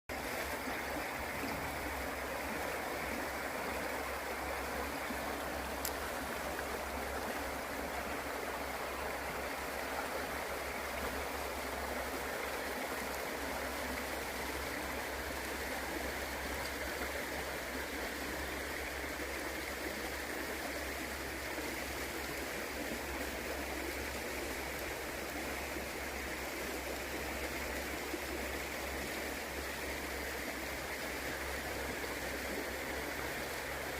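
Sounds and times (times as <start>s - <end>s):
river gurgling and rushing: 0.1s - 33.9s.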